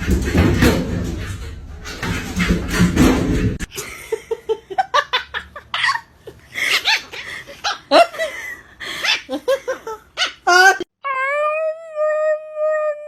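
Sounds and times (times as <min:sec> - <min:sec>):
person giggling: 0:03.7 - 0:10.9.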